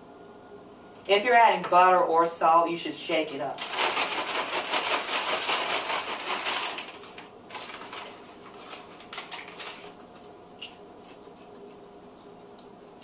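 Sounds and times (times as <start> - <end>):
paper bag of popcorn shaken: 3.5 - 10.0
paper crinkles and clicks: 3.6 - 10.8.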